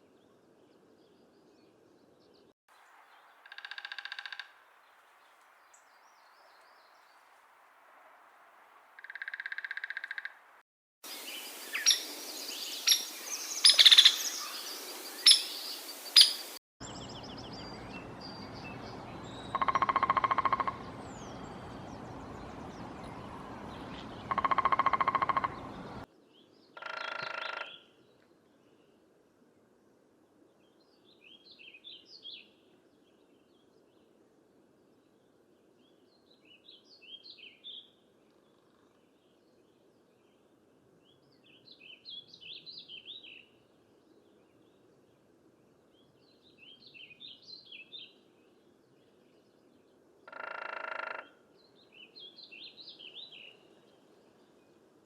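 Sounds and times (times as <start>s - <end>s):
long woodpecker calls: 3.4s - 4.6s, 9.0s - 26.1s, 26.8s - 28.0s, 50.3s - 51.6s
woodpecker call notes: 3.4s - 4.6s, 9.0s - 10.5s, 11.1s - 26.0s, 26.8s - 27.9s, 50.3s - 51.5s.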